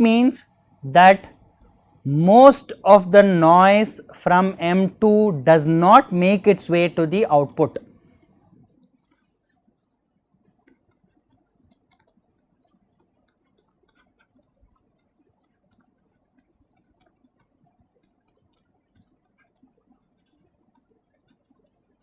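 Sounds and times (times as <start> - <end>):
pen tapping on a tablet: 10.3 - 21.7.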